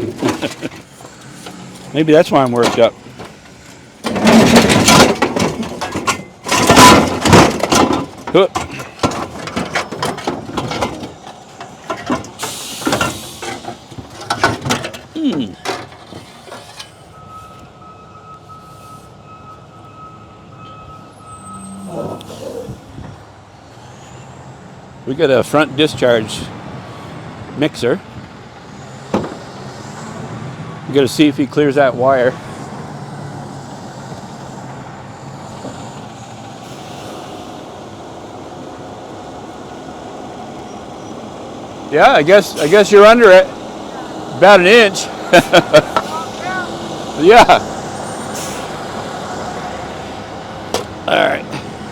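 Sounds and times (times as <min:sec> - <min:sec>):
truck reversing alarm beeping: 0:16.9 - 0:22.4, 0:39.7 - 0:50.7
truck engine running: 0:28.0 - 0:51.9.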